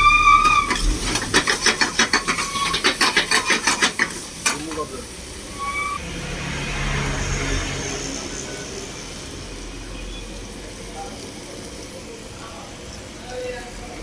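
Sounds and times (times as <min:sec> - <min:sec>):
spatula scraping cooking pan: 0:00.0 - 0:06.0.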